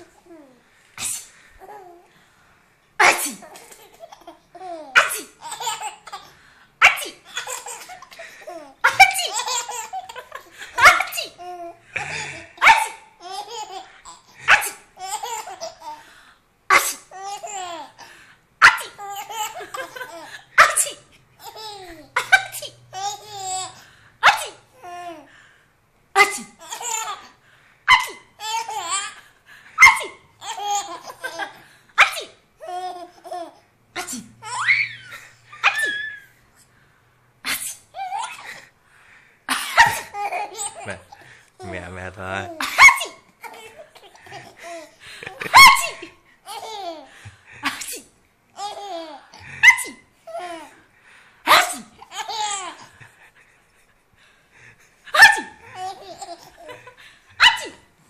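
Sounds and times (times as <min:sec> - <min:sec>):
sneeze: 0:01.0 - 0:01.4, 0:03.0 - 0:03.6, 0:05.0 - 0:05.4, 0:06.8 - 0:07.2, 0:10.8 - 0:11.4, 0:14.5 - 0:14.9, 0:16.7 - 0:17.1, 0:20.6 - 0:21.1, 0:24.2 - 0:24.6, 0:26.2 - 0:26.6, 0:32.0 - 0:32.4, 0:34.0 - 0:34.3, 0:37.4 - 0:38.0, 0:42.7 - 0:43.2, 0:47.6 - 0:48.2, 0:49.6 - 0:50.0, 0:51.5 - 0:52.0, 0:57.4 - 0:57.8
baby laughing: 0:03.0 - 0:16.0, 0:16.7 - 0:25.3, 0:26.2 - 0:36.3, 0:37.9 - 0:38.7, 0:39.6 - 0:47.9, 0:48.6 - 0:50.8, 0:51.5 - 0:53.9, 0:55.1 - 0:57.8.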